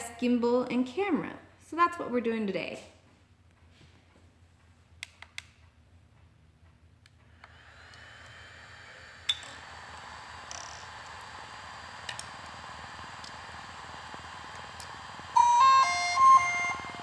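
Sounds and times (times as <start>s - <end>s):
cooling fans whirring: 7.2s - 17.0s.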